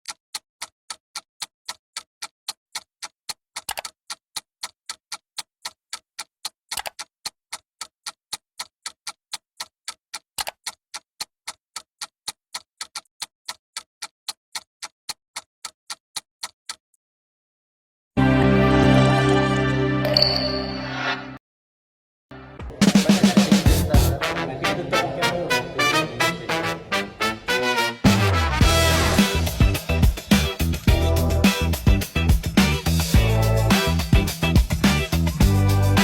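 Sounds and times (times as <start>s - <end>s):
steady ticking: 0.0s - 16.8s, 28.6s - 36.0s
loud music: 18.2s - 20.0s, 22.4s - 36.0s.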